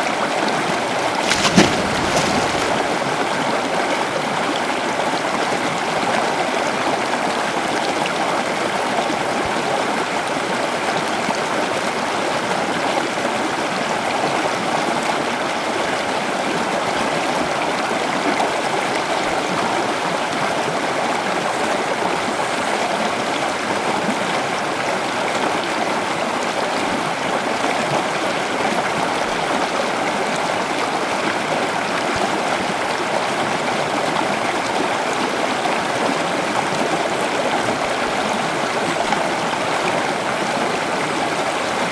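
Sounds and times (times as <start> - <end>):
river water rushing: 1.2 - 3.1.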